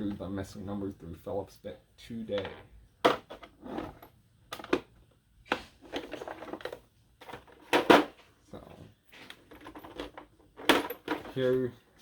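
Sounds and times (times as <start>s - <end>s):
small tools clinking in a drawer: 9.3s - 11.8s.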